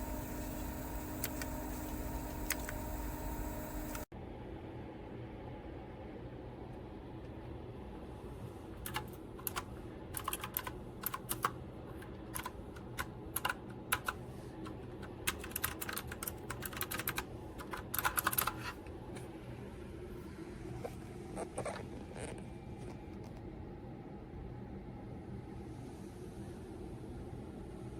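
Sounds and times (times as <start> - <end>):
clicky keyboard typing: 0.0 - 4.1, 8.8 - 18.7
steady low hum: 0.0 - 27.9.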